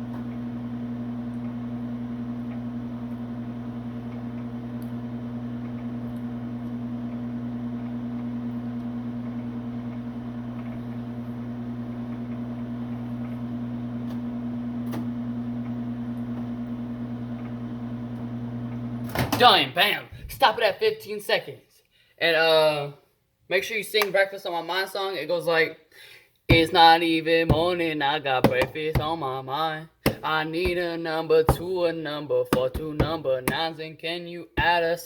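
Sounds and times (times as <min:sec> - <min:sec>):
microwave oven humming: 0:00.0 - 0:19.4.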